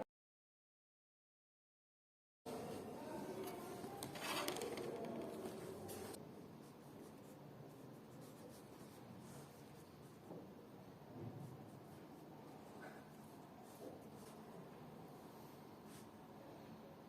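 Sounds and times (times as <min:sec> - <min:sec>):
light scratching and rubbing: 0:03.4 - 0:06.2.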